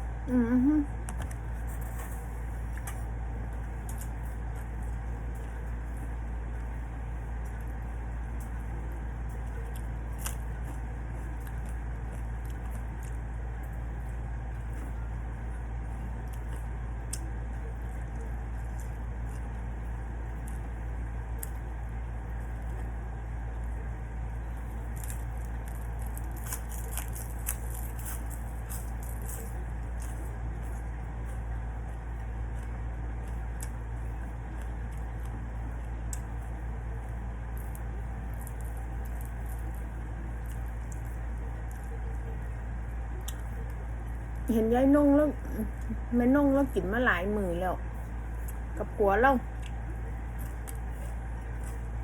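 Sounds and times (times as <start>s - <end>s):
steady low hum: 0.0s - 52.0s
chewing: 16.0s - 44.5s, 49.5s - 52.0s.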